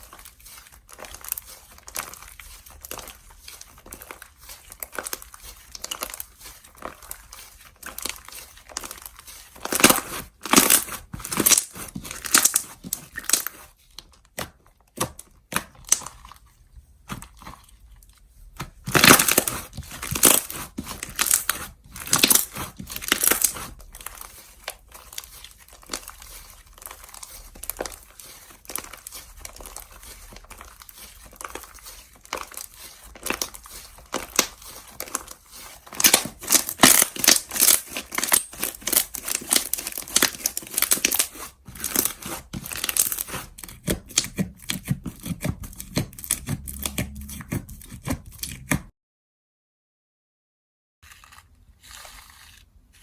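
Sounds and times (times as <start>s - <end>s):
slime crackling and popping: 0.8s - 13.7s, 18.9s - 47.2s.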